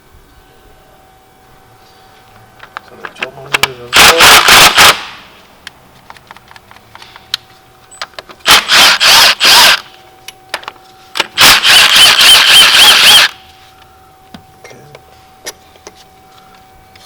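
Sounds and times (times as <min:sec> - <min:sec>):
cordless power tool spinning: 0:08.4 - 0:09.9, 0:11.3 - 0:13.4.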